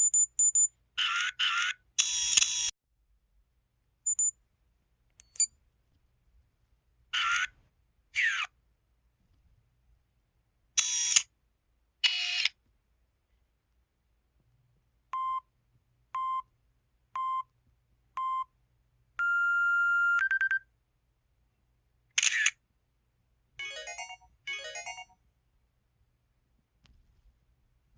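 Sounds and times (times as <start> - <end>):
phone beeps: 4.1 - 4.3, 15.2 - 15.4, 19.2 - 20.7.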